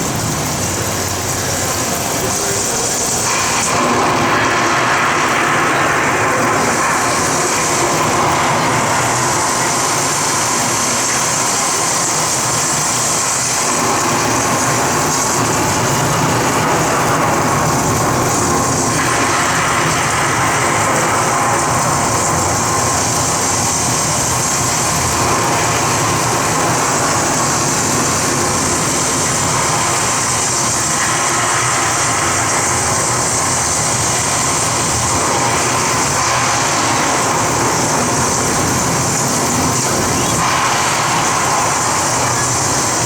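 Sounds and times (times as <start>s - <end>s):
rain shower hissing: 0.0s - 43.0s.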